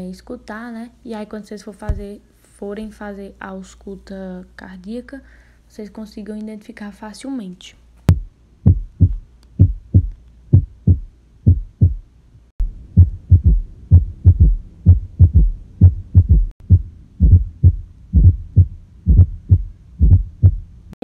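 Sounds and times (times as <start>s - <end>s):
background hum: 0.0s - 21.0s
heartbeat through stethoscope: 8.1s - 12.0s, 12.9s - 20.7s.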